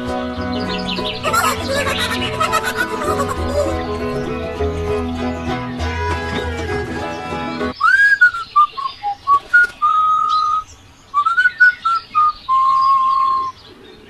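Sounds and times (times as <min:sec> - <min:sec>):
person whistling a melody: 0:07.8 - 0:10.6, 0:11.2 - 0:13.5.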